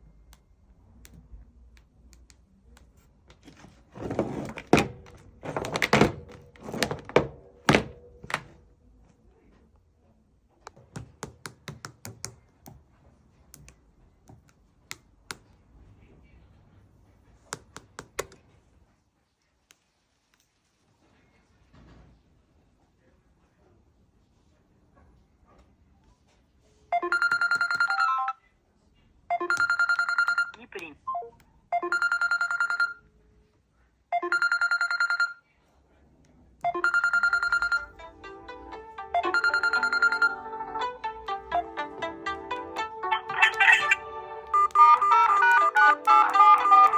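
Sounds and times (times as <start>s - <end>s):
melodic ringtone: 27.0s - 28.4s, 29.3s - 30.5s, 31.7s - 33.0s, 34.2s - 35.4s, 36.7s - 46.9s
phone bell-style ringtone: 27.0s - 28.4s, 29.3s - 30.5s, 31.8s - 33.0s, 34.2s - 35.4s, 36.7s - 41.9s, 43.0s - 46.9s.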